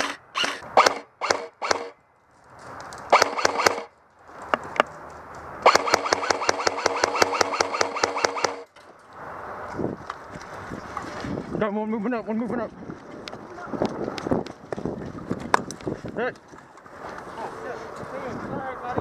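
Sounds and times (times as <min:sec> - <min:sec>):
airsoft gun firing: 0:00.4 - 0:02.0, 0:03.1 - 0:03.9, 0:05.6 - 0:08.6.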